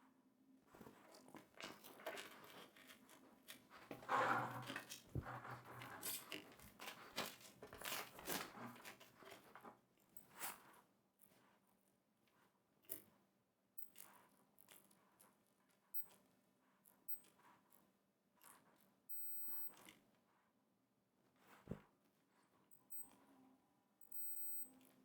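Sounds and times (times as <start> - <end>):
cable handling clicks and scrapes: 0.9 - 9.7.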